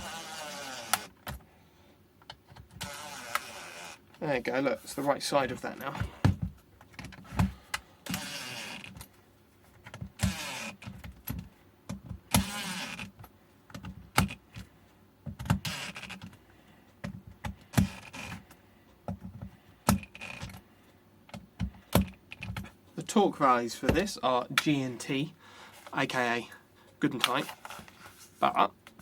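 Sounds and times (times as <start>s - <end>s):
electric screwdriver whirring: 0.0s - 1.2s, 2.8s - 4.0s, 8.1s - 8.9s, 10.2s - 10.8s, 12.3s - 13.1s, 15.6s - 16.2s.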